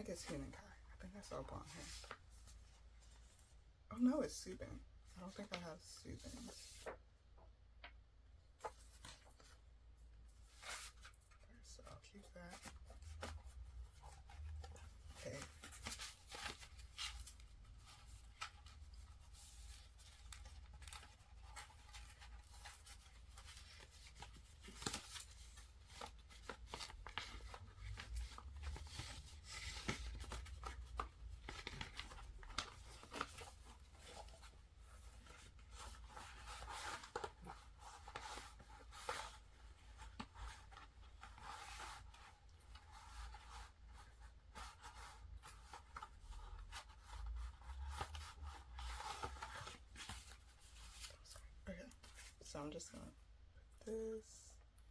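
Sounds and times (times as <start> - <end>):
paper and plastic rustling: 10.3 - 52.5.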